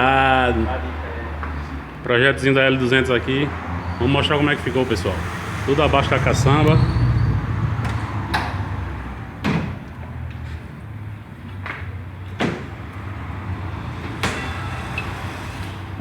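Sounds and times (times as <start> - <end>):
pickup panels clunking shut: 7.8 - 10.7, 11.5 - 13.0.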